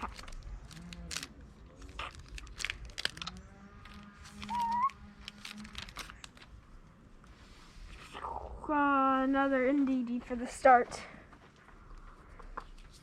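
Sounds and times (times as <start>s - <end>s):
foil pack crinkling: 0.0s - 6.5s
wavering whistle-like tone: 4.4s - 5.0s.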